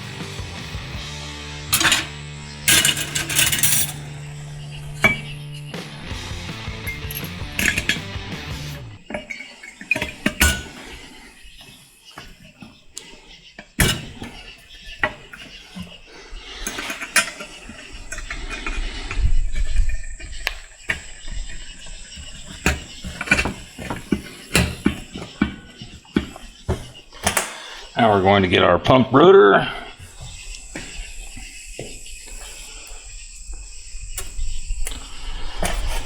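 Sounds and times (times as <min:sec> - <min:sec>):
metal parts clinking on workbench: 0:01.7 - 0:05.7, 0:06.8 - 0:08.2, 0:09.0 - 0:10.9, 0:16.6 - 0:18.8, 0:22.2 - 0:25.6.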